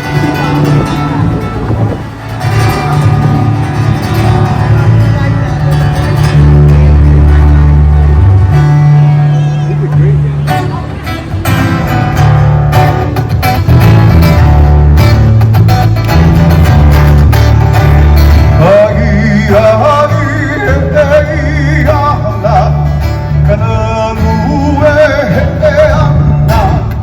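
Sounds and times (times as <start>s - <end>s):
bass line: 0.0s - 27.0s
strummed guitars: 0.0s - 27.0s
person singing with vibrato: 18.5s - 27.0s.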